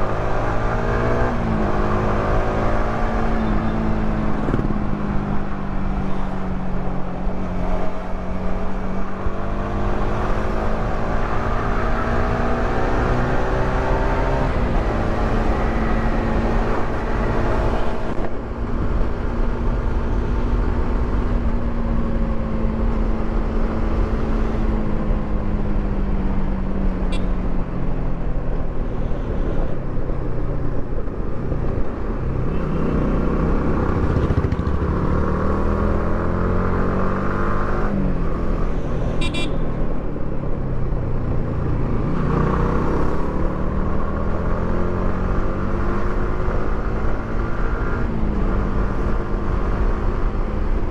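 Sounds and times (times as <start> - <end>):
motorcycle engine riding: 30.0 - 50.9.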